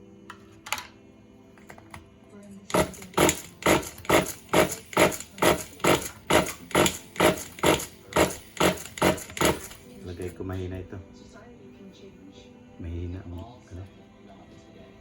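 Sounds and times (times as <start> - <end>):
starter motor cranking engine: 2.7 - 10.3.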